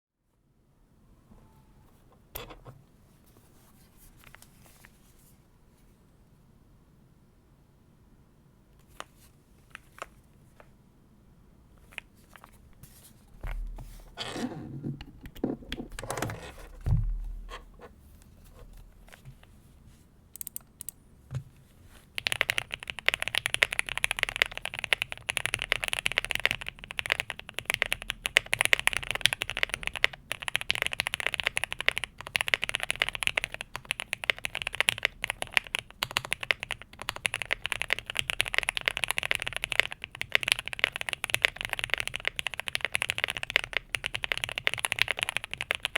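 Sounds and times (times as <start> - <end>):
mechanical keyboard typing: 20.4 - 21.0, 22.2 - 45.9.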